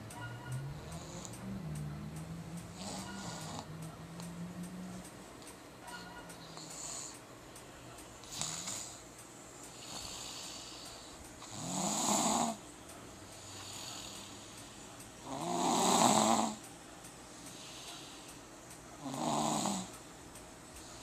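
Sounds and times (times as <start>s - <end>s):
person snoring: 2.7s - 3.8s, 11.4s - 12.6s, 15.2s - 16.6s, 19.0s - 19.9s
quiet breathing: 6.4s - 12.6s, 13.2s - 16.7s, 17.3s - 21.0s.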